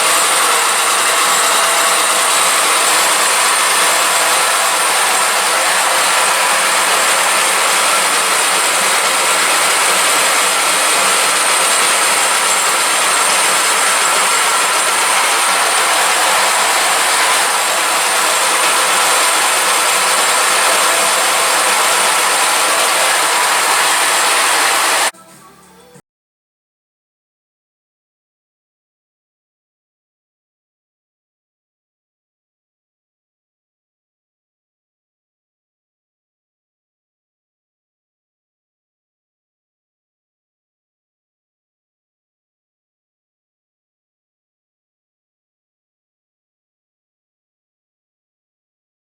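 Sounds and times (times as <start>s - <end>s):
machining noise with high whine: 0.0s - 25.1s.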